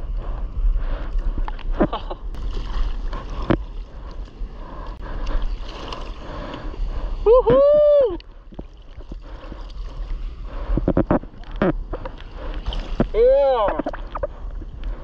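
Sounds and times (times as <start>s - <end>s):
seawater sloshing and splashing: 2.4s - 4.8s, 12.3s - 14.5s.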